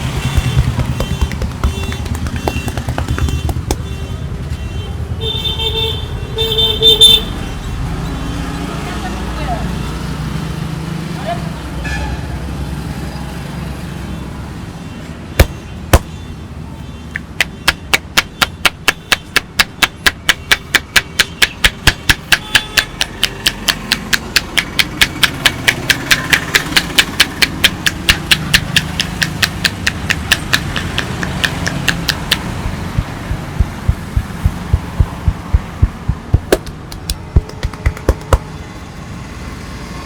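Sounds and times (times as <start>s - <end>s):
hands slapping body in massage: 0.0s - 3.8s, 30.3s - 38.5s
knocks: 0.0s - 4.0s, 17.2s - 38.5s
low street hum: 0.0s - 6.4s, 14.0s - 40.0s.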